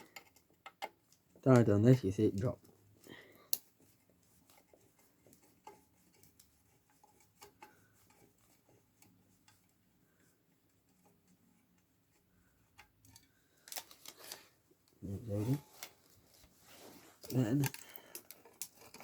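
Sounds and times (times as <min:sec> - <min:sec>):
small parts clicking: 0:00.0 - 0:01.7, 0:12.7 - 0:14.4, 0:17.2 - 0:19.0.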